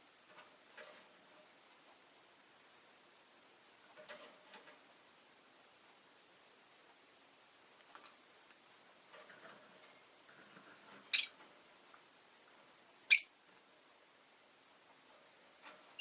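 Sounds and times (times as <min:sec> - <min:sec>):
lovebird high-pitched calls: 0:11.1 - 0:11.4, 0:13.1 - 0:13.4.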